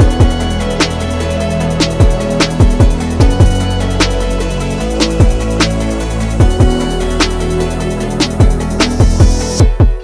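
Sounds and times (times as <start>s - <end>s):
electronic music with heavy beat: 0.0s - 10.0s.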